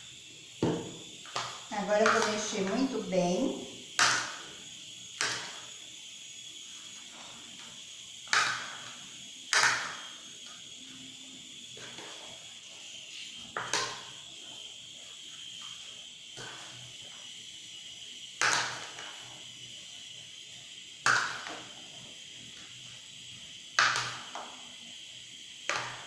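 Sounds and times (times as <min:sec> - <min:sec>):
spoon stirring vegetables: 0:01.3 - 0:03.7.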